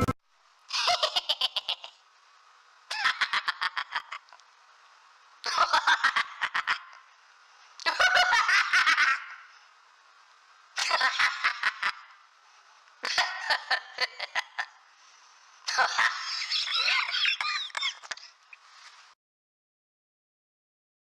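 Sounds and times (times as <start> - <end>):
cartoon snickering laugh: 0.7 - 2.0, 2.9 - 4.3, 5.4 - 7.0, 7.8 - 9.5, 10.8 - 12.2, 13.0 - 14.8, 15.7 - 18.4.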